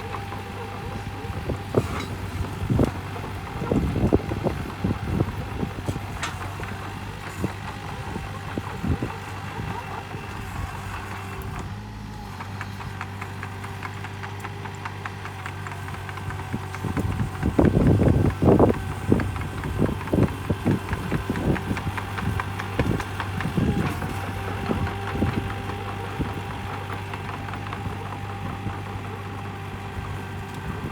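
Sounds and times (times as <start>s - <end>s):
excavator diesel engine running: 0.0s - 30.9s.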